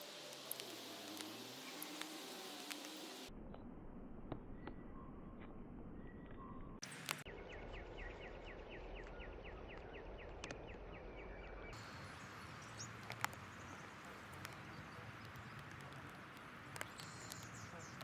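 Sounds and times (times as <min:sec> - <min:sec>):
background hiss: 0:00.0 - 0:03.3, 0:11.8 - 0:18.0
bird chirping: 0:00.0 - 0:03.3, 0:04.5 - 0:18.0
small clicks and taps: 0:00.3 - 0:03.2, 0:11.8 - 0:18.0.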